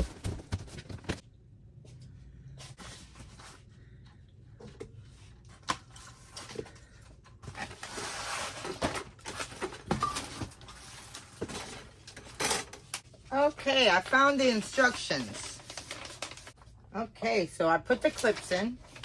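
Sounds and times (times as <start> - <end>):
packaging rustling: 14.0 - 16.7.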